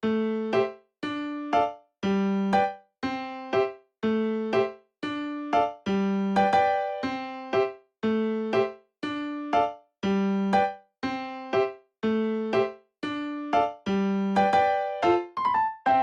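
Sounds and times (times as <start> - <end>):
electric piano melody: 0.0 - 16.0.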